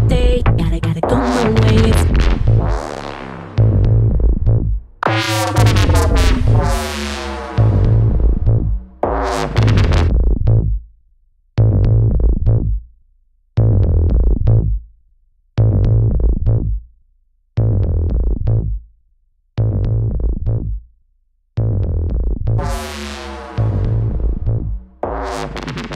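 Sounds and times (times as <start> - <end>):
drum-machine beat: 0.0 - 10.8, 21.6 - 25.9
heavy synth bass: 0.0 - 10.8, 11.6 - 12.8, 13.6 - 14.8, 15.6 - 16.8, 17.6 - 18.8, 19.6 - 20.7, 21.6 - 25.9.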